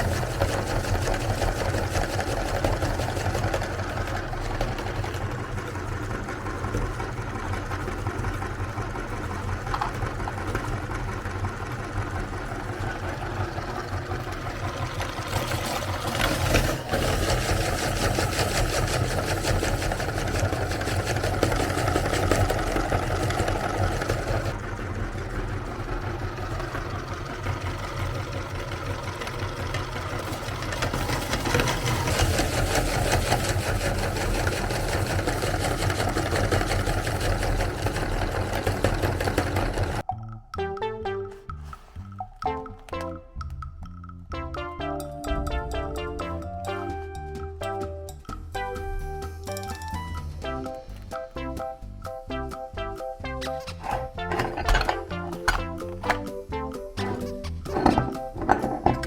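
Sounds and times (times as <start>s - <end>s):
meat grinder motor running: 0.0s - 40.0s
rough churning of grinding: 0.0s - 40.1s, 53.5s - 56.3s, 57.0s - 59.0s.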